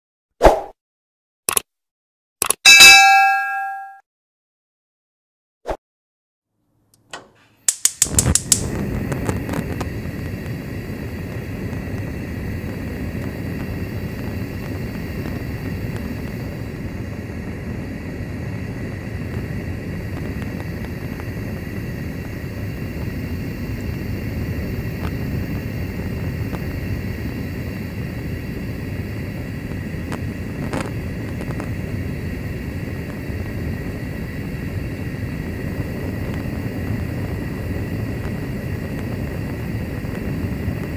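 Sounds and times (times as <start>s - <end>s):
gas igniter clicks: 6.9s - 8.8s
burner flame hissing: 7.0s - 40.9s.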